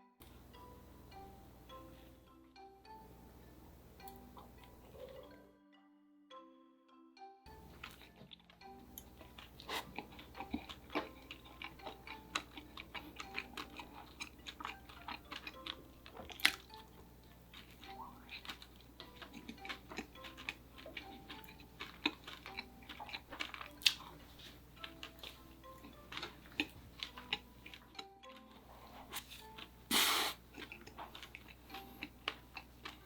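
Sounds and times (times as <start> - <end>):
quiet background music: 0.0 - 33.0
crisp chewing sounds: 7.6 - 33.0.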